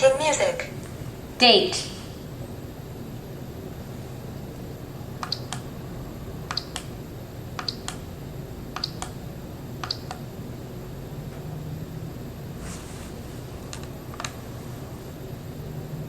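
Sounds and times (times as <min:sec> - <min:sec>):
alarm clock button clicks: 0:05.2 - 0:05.6, 0:06.5 - 0:06.9, 0:07.6 - 0:08.0, 0:08.8 - 0:09.2, 0:09.8 - 0:10.2.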